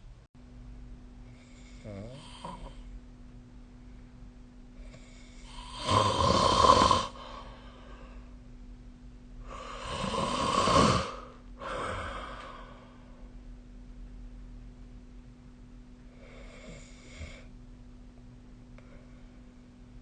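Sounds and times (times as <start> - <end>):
person snoring: 1.3 - 2.9, 4.8 - 8.0, 9.4 - 13.0, 16.1 - 17.5.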